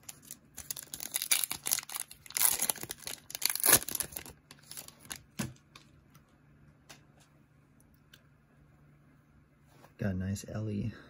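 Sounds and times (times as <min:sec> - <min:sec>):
wrapper tearing and crinkling: 0:00.0 - 0:05.4.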